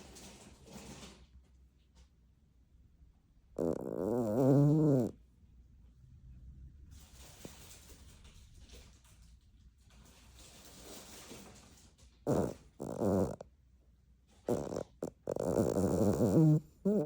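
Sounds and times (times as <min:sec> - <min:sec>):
loud snoring: 0:03.6 - 0:05.2, 0:12.3 - 0:13.4, 0:14.5 - 0:17.0.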